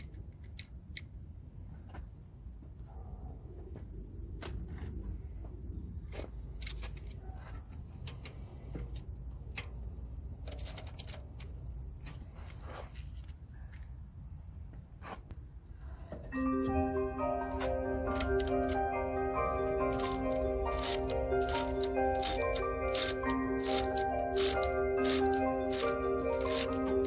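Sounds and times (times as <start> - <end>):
metallic clicks and clinks of tools: 18.0 - 18.8, 19.9 - 27.0.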